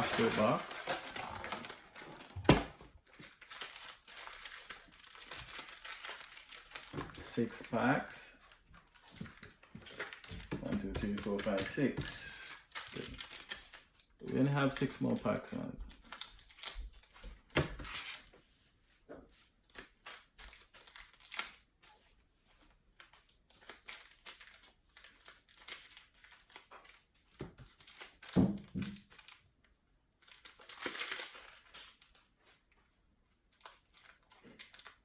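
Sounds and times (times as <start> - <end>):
foil wrappers crinkling: 0.0 - 18.3, 19.6 - 29.5, 30.2 - 32.7, 33.5 - 35.0.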